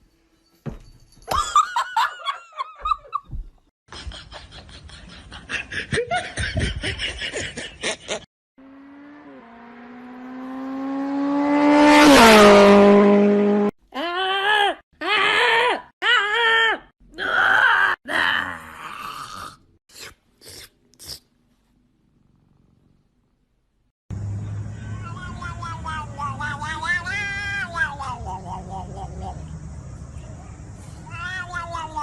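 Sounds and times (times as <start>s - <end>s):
engine passing by: 8.6s - 13.7s, 24.1s - 31.1s
groan-like cries: 13.9s - 19.7s
bending voice-like calls: 24.9s - 29.6s.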